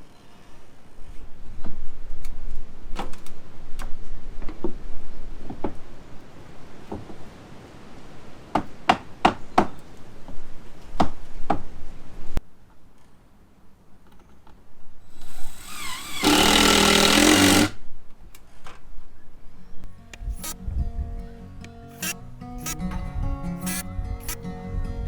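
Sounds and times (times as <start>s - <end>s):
power tool running: 15.1s - 17.8s, 20.3s - 20.6s, 21.9s - 22.8s, 23.6s - 24.4s.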